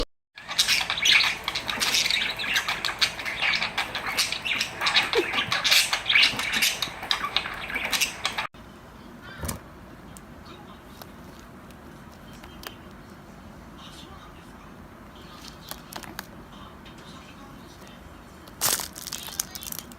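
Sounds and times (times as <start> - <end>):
parrots squawking and screeching: 0.4 - 8.5.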